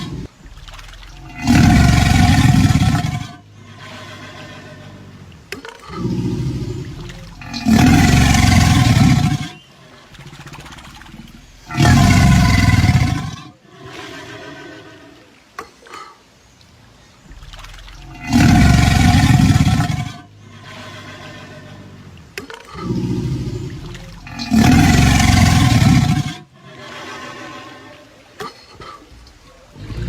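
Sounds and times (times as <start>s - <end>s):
caiman growling: 0.0s - 15.3s, 17.4s - 30.0s.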